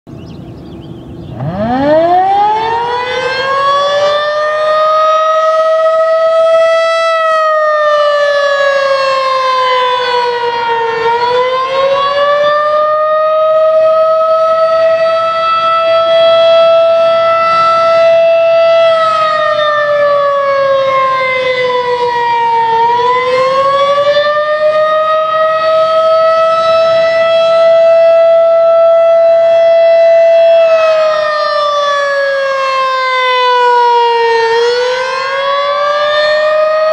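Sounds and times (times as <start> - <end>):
rotating warning siren: 0.2 - 36.9.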